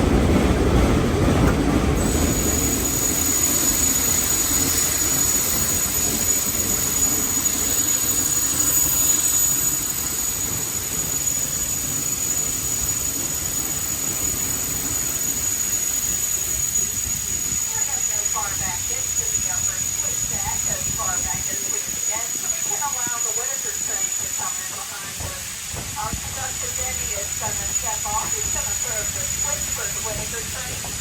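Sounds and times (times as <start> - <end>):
steam train rumble and hiss: 0.0 - 31.0
high steady whine: 2.0 - 31.0.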